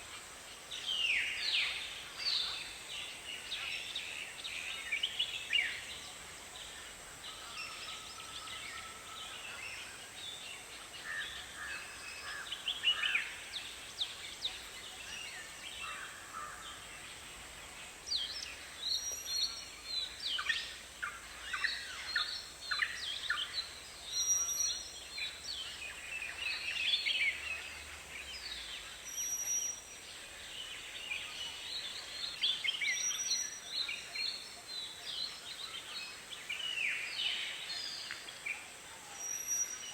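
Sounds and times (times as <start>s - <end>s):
faint high hiss: 0.0s - 39.9s.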